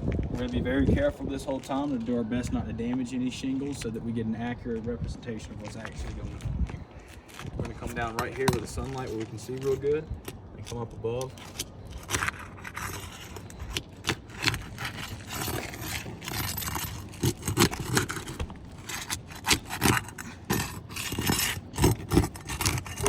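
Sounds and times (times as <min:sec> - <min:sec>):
roof shingles scraping and crackling: 0:11.2 - 0:23.0
shingles snapping: 0:11.2 - 0:23.0.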